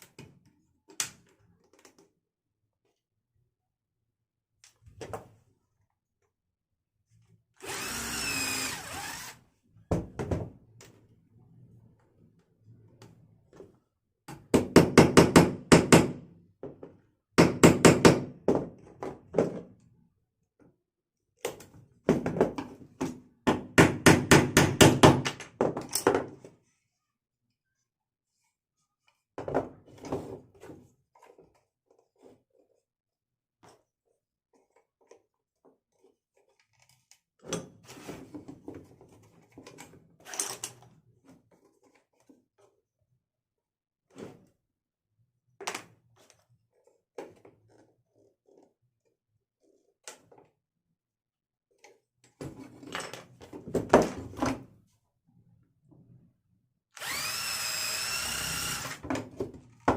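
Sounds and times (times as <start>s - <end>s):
electric drill whining: 7.6s - 9.4s, 57.0s - 59.0s.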